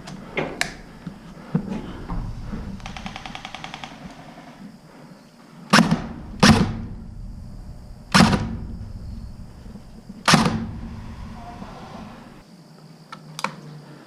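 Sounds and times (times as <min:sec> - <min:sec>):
loud sharp airsoft shots: 0:05.7 - 0:07.1, 0:08.1 - 0:08.8, 0:10.2 - 0:11.4.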